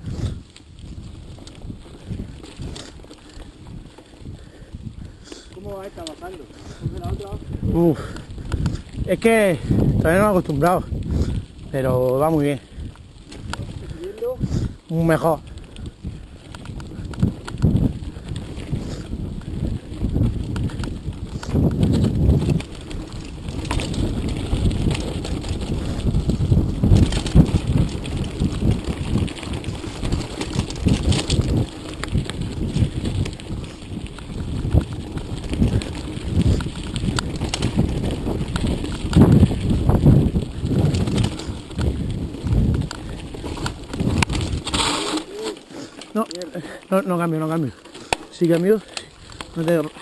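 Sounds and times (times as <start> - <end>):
bike rattling and knocking: 0.0 - 50.0
wind buffeting microphone: 0.0 - 50.0
tyres crunching on rocks: 20.2 - 50.0.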